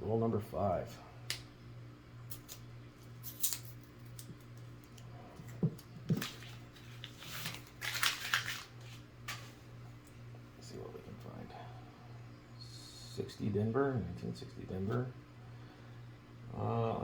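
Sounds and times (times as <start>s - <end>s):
steady low hum: 0.0s - 17.0s
paper crinkling and tearing: 6.1s - 9.6s.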